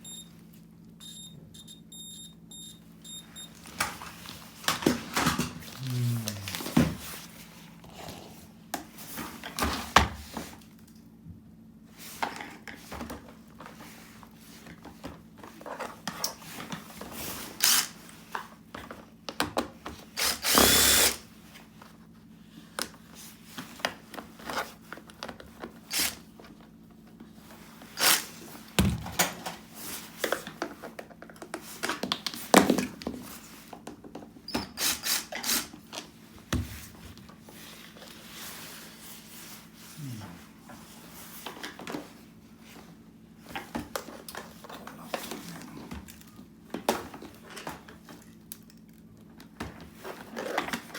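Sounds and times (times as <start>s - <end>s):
small electric motor whirring: 20.2s - 21.2s.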